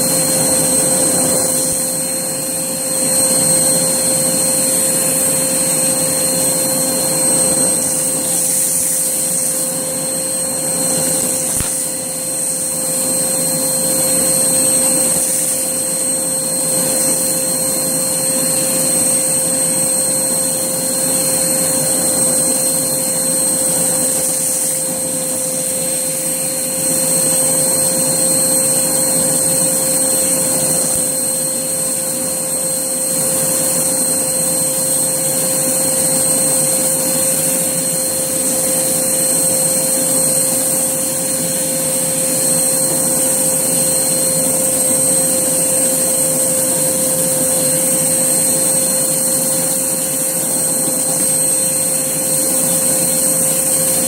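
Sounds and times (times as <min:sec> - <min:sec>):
vacuum cleaner motor whine: 0:00.0 - 0:54.0
crunchy debris being vacuumed: 0:06.4 - 0:13.8.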